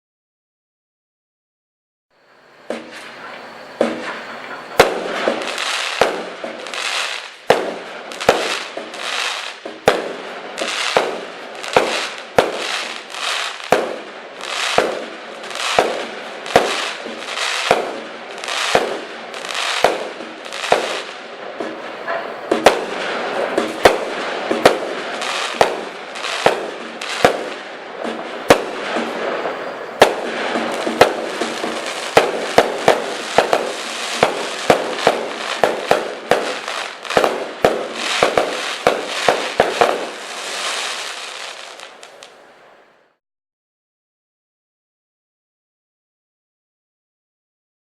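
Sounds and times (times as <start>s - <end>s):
rushing hiss of fireworks: 2.1s - 43.2s
fireworks battery firing: 2.6s - 42.4s.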